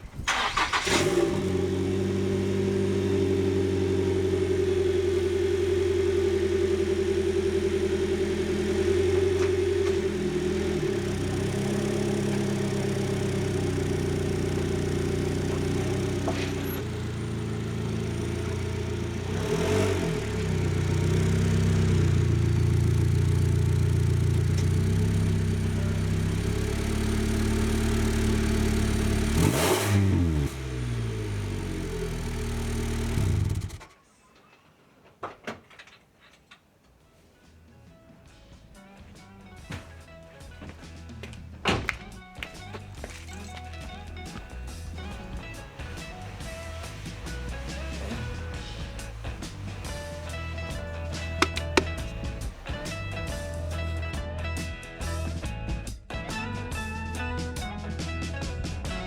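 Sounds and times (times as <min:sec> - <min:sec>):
car engine revving: 0:00.2 - 0:33.8, 0:42.7 - 0:54.1.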